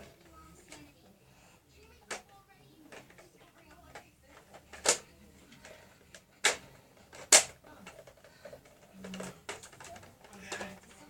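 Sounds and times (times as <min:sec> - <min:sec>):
plastic magazine clicks: 0:07.2 - 0:07.6.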